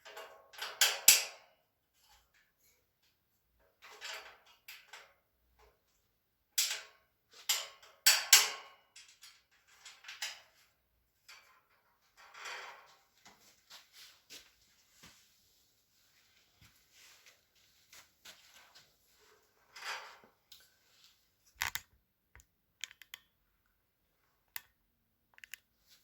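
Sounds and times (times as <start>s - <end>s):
metal shelving parts clicking and scraping: 3.7s - 5.1s, 6.6s - 13.4s, 19.2s - 20.7s.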